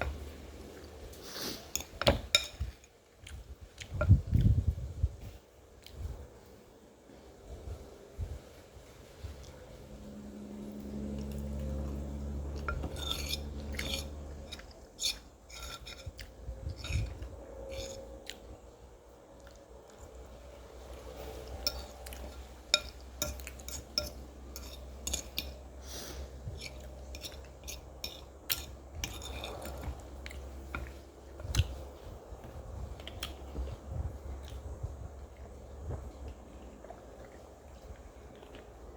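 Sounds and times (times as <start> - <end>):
low steady hum: 0.0 - 38.9
cutlery clinking on a plate: 1.7 - 2.7, 12.6 - 16.1, 21.6 - 25.6
eating sounds: 24.7 - 38.9.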